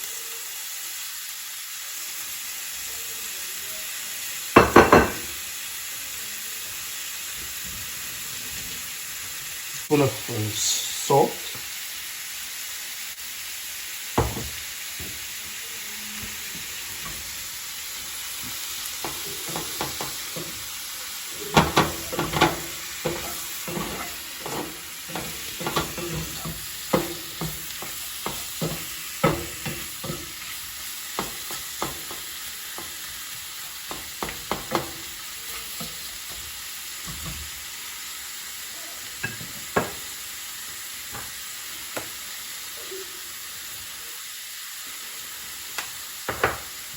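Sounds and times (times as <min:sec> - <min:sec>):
shrimp sizzling in oil: 0:00.0 - 0:46.9
utensil scraping a pan: 0:18.9 - 0:33.0.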